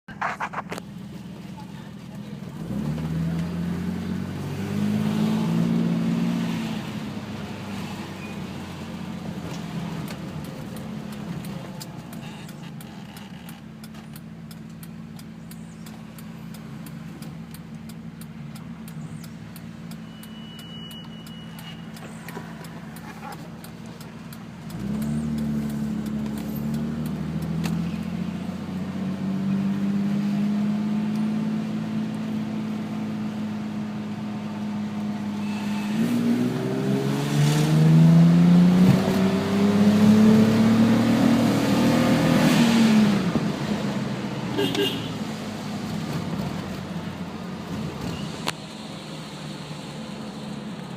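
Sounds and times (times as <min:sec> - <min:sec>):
car engine accelerating: 0:00.1 - 0:44.5.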